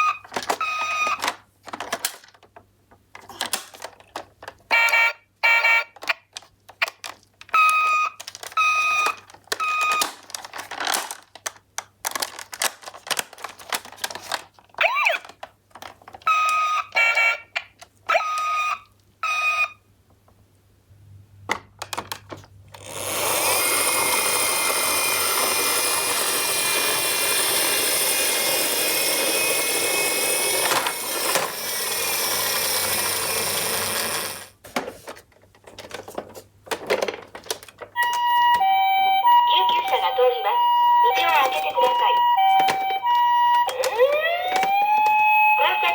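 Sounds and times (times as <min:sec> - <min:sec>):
plastic toy cars clicking: 0:00.2 - 0:04.7, 0:05.9 - 0:16.6, 0:21.8 - 0:34.6, 0:35.2 - 0:38.0
several toy sirens at once: 0:04.7 - 0:05.9, 0:14.8 - 0:15.3, 0:18.1 - 0:19.8, 0:38.0 - 0:45.9
toy electronic siren tones: 0:14.8 - 0:15.3, 0:16.3 - 0:19.8, 0:22.9 - 0:34.4, 0:38.0 - 0:45.9.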